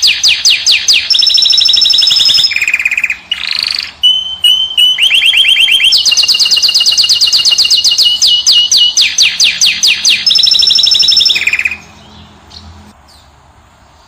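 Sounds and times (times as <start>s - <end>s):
finch trilling: 0.0s - 12.6s.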